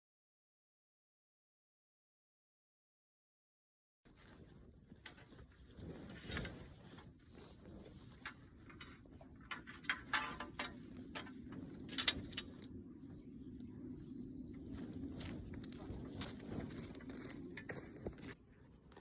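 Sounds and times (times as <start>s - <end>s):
bird chirping: 4.1s - 17.5s
objects being handled: 5.0s - 12.7s.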